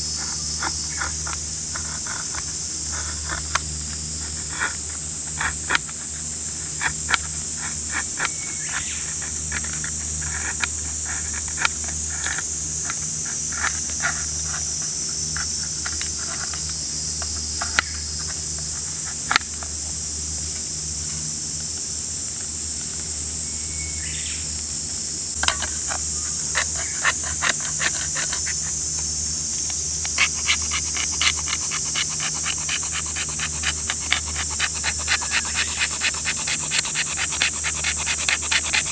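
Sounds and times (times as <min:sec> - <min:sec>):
high-pitched insect chorus: 0:00.0 - 0:38.9.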